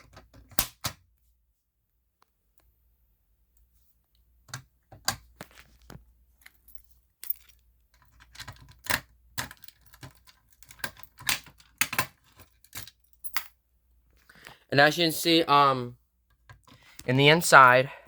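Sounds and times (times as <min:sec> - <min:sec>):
clicks and knocks of handling: 0:04.5 - 0:13.5
keys jingling: 0:06.4 - 0:13.5.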